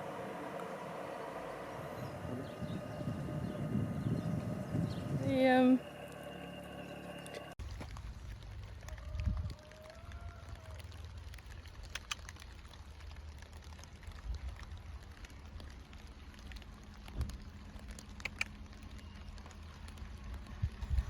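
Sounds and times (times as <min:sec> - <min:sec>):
low steady rumbling: 0:00.0 - 0:09.6
faint sharp clicks: 0:11.7 - 0:12.5.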